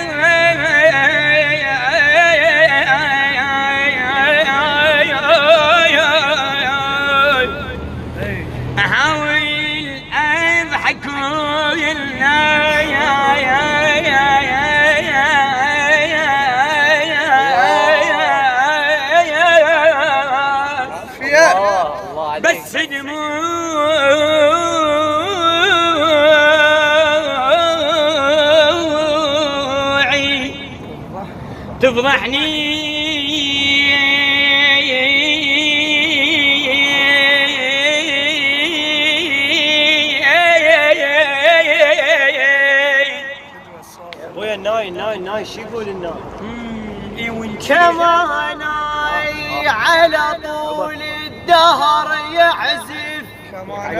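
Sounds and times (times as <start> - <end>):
man singing a held wordless note: 8.4 - 30.7.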